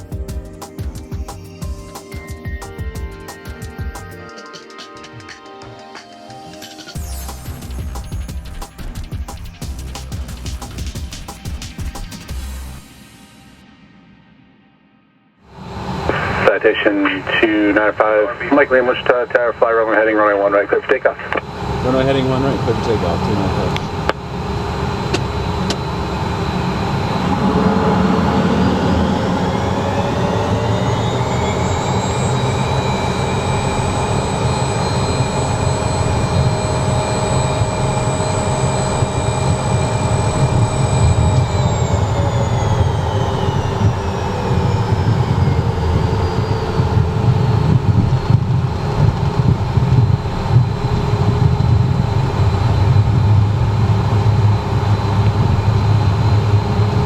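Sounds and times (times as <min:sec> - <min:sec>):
jet engine whine: 0:00.0 - 0:57.0
low rumble: 0:15.5 - 0:57.0.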